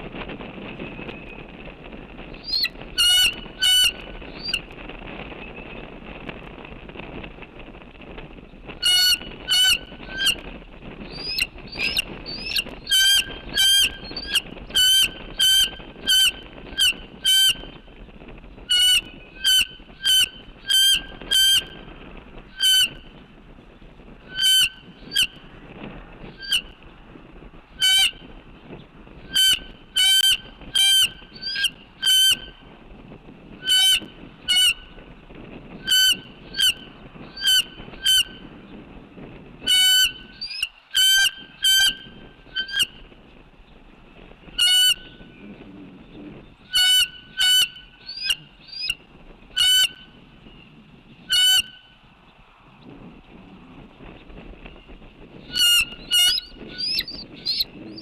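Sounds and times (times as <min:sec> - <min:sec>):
geese honking: 0:02.5 - 0:04.0, 0:08.8 - 0:10.4, 0:22.6 - 0:23.0, 0:27.8 - 0:28.2, 0:29.3 - 0:32.5, 0:46.7 - 0:49.0, 0:51.3 - 0:51.8, 0:55.5 - 0:58.0.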